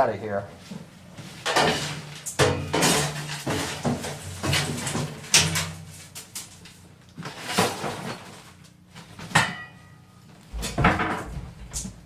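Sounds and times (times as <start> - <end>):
bathtub knocking and thumping: 10.5 - 12.0.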